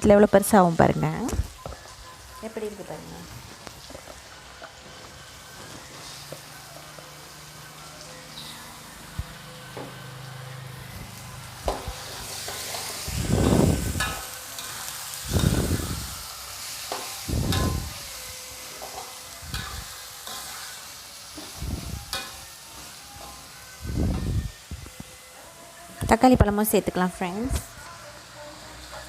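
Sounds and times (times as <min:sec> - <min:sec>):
food sizzling in a pan: 0:00.0 - 0:29.0
stirring strokes in a pan: 0:02.8 - 0:25.8.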